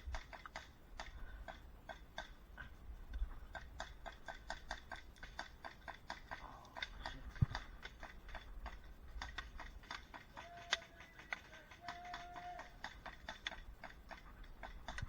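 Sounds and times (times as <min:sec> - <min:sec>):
airsoft guns firing: 0:07.5 - 0:15.0.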